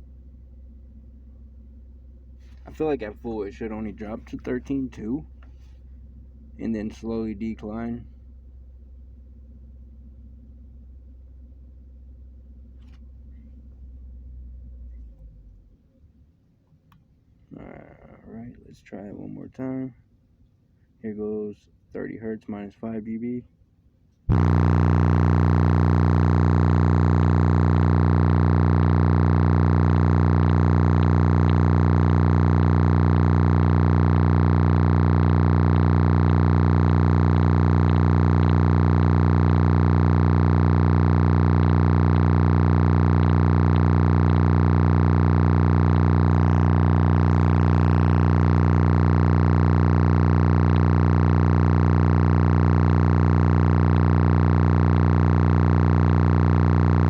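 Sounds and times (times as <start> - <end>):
buzzy bass drone: 24.3 - 57.0.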